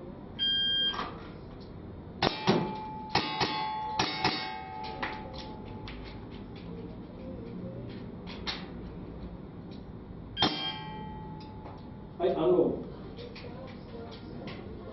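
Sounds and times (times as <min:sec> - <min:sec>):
shot timer beep: 0:00.4 - 0:01.0, 0:10.4 - 0:11.7
metal targets clanging: 0:02.2 - 0:06.1, 0:10.4 - 0:11.8.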